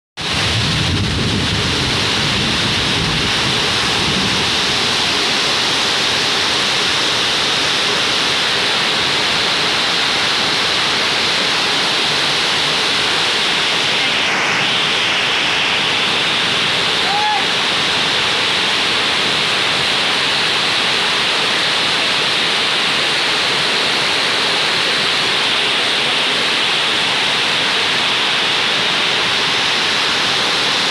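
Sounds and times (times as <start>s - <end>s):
rain pouring: 0.2s - 30.9s.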